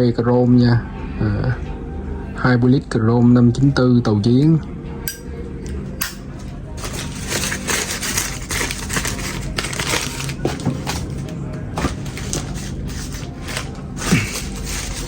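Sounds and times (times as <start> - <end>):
packaging crinkling: 6.8 - 15.0.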